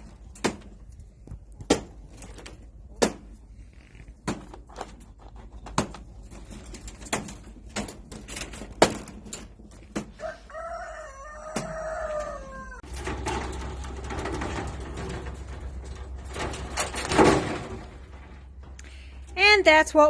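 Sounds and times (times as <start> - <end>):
rooster crowing: 10.1 - 12.9.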